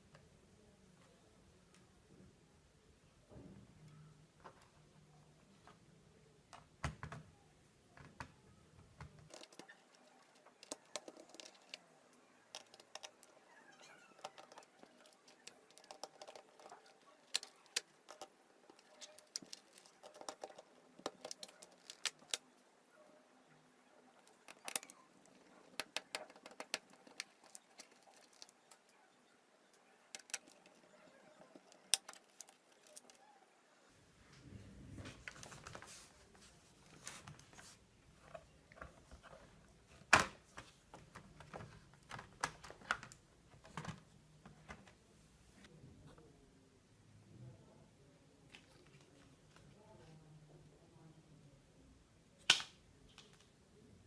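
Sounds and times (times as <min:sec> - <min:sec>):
hands handling laptop parts: 0:07.9 - 0:22.7, 0:24.0 - 0:33.3, 0:35.0 - 0:45.0.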